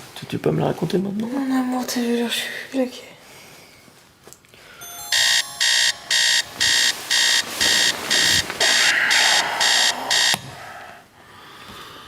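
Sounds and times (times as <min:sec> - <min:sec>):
alarm clock beeping: 0:04.8 - 0:10.6.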